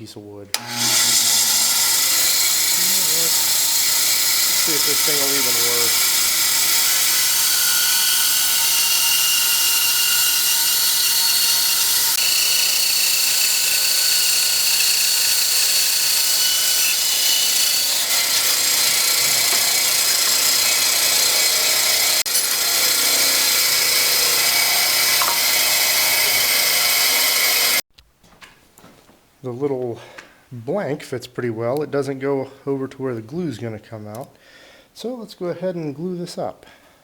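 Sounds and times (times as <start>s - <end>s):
power tool cutting wood: 0.6s - 27.8s.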